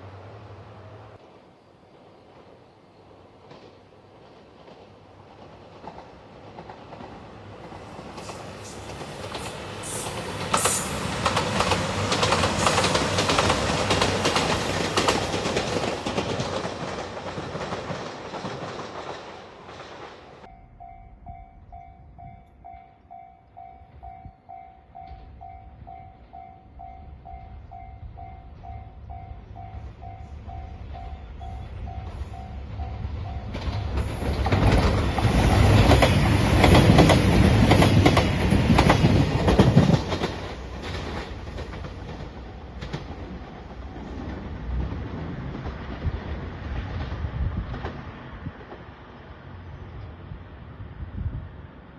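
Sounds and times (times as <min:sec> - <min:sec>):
train passing with wheel noise: 0:00.0 - 0:51.9
low rumble: 0:20.4 - 0:24.4
level crossing warning bell: 0:20.4 - 0:33.7.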